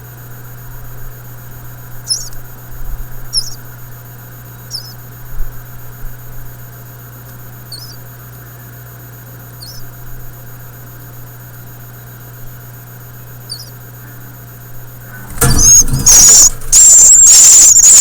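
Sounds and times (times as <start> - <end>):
nestling birds begging peeps: 2.0 - 2.5, 3.2 - 3.8, 4.5 - 5.1, 7.6 - 8.1, 9.6 - 10.0, 13.4 - 14.4, 15.1 - 18.0.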